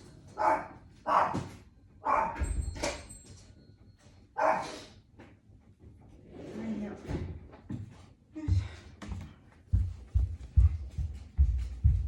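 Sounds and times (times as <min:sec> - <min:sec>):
dog barking: 0:00.4 - 0:02.4, 0:04.4 - 0:04.9.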